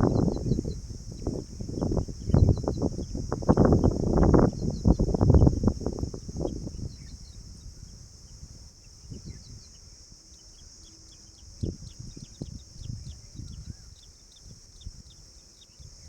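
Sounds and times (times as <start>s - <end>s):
insect chorus: 0.0s - 16.0s
faint bird chirps: 6.4s - 16.0s.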